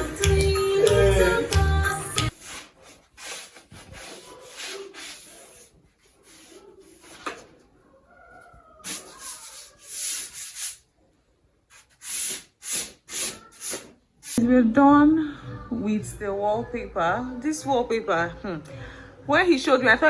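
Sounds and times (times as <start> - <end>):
music: 0.0 - 2.3, 14.4 - 20.0
rubbing and scraping noises: 2.2 - 7.8.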